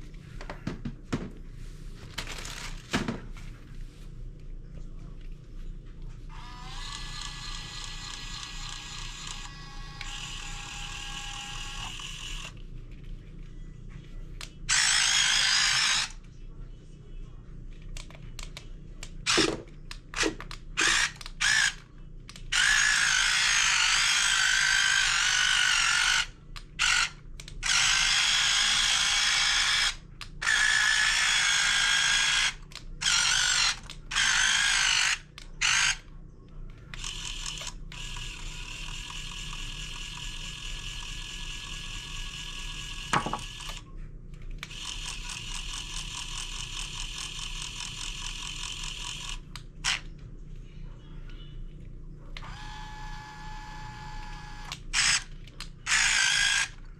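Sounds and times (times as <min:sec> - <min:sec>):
quiet steady whine: 0:00.0 - 0:56.9
electric gear motors whirring: 0:06.3 - 0:12.6, 0:14.7 - 0:16.2, 0:20.2 - 0:21.8, 0:22.5 - 0:36.0, 0:37.0 - 0:43.8, 0:52.4 - 0:55.3, 0:55.9 - 0:56.8.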